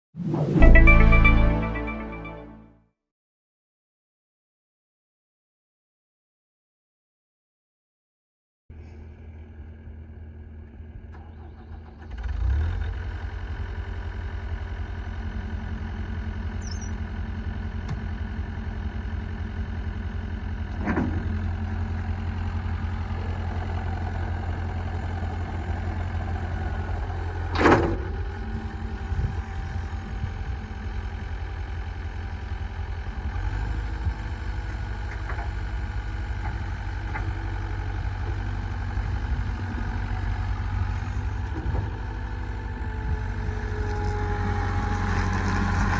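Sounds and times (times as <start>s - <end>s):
brief sharp sounds: 0.2s - 2.7s
diesel engine running: 8.8s - 45.9s.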